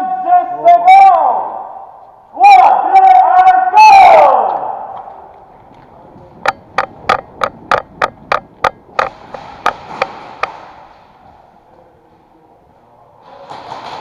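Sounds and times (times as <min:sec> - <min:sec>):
sharp echoing cracks: 0:04.3 - 0:11.4.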